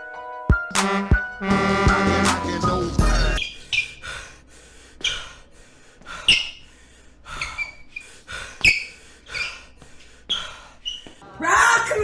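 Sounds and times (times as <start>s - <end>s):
person gasping breaths: 3.8s - 10.8s.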